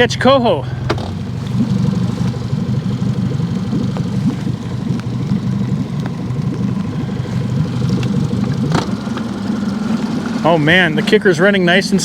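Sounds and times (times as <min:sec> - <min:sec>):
outboard motor running: 0:00.0 - 0:12.0
faint rain ticks: 0:01.4 - 0:10.5.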